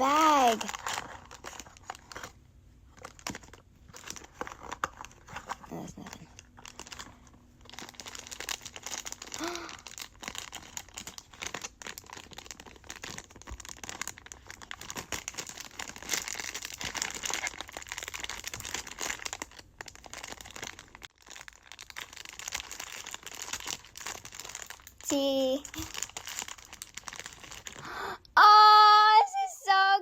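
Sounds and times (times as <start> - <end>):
packaging crinkling and rustling: 0.0 - 27.9.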